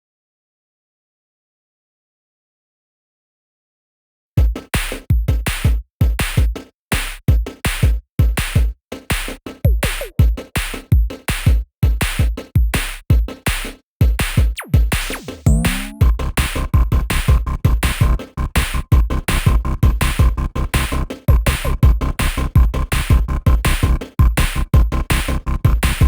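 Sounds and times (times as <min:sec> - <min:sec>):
electronic music with drum-machine beat: 0:04.4 - 0:26.0
deep bass thumps: 0:14.0 - 0:26.0.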